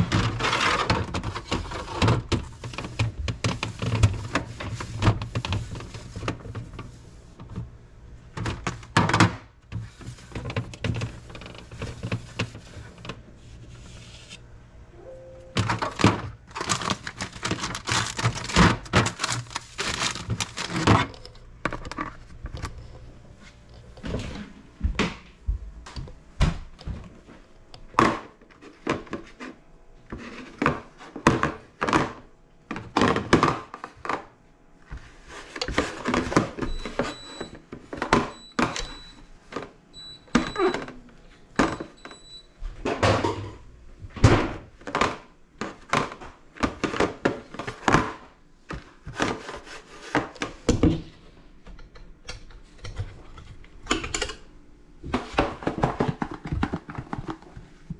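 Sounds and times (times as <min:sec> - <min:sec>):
clunks of containers and fridge parts: 0:00.0 - 0:13.3, 0:15.1 - 0:22.9, 0:23.8 - 0:49.4, 0:50.1 - 0:57.9
faint thin high tone: 0:14.9 - 0:15.6.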